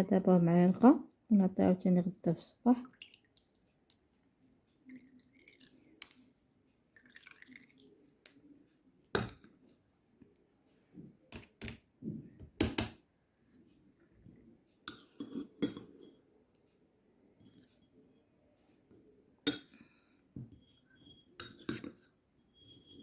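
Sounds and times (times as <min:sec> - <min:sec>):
metal spoon clinking against glass: 0:21.4 - 0:21.9.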